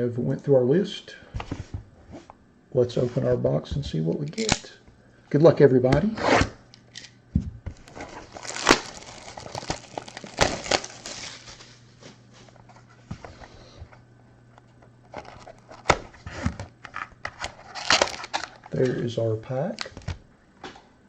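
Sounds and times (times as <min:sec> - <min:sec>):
cardboard being handled: 0:07.7 - 0:13.0
wrapping crinkling and tearing: 0:07.8 - 0:12.0, 0:16.9 - 0:18.8.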